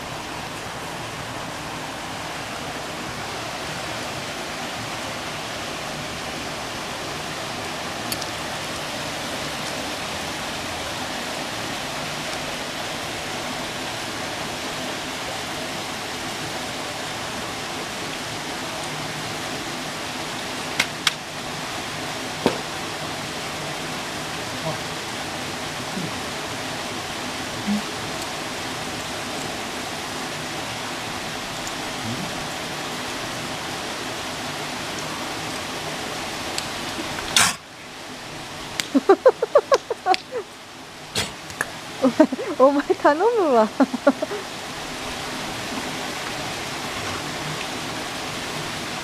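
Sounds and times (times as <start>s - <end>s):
background hiss: 0.0s - 49.0s
dog sneezing: 41.2s - 41.4s.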